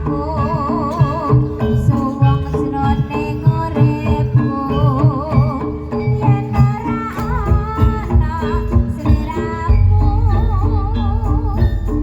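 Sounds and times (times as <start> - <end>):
ringing pitched percussion: 0.0 - 12.0
wavering melody line: 0.0 - 12.0
quick low drum beat: 7.4 - 12.0.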